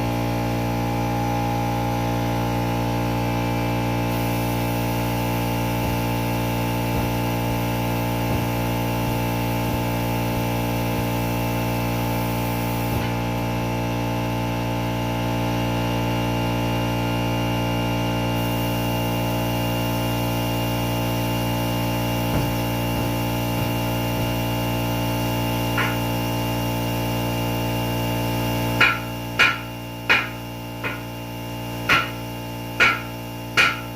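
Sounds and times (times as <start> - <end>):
motor humming: 4.1 - 13.7, 19.1 - 27.5.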